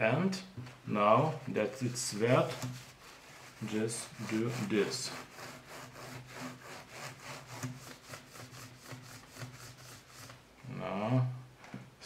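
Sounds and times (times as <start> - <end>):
paper towel scrubbing keyboard keys: 1.5 - 10.4.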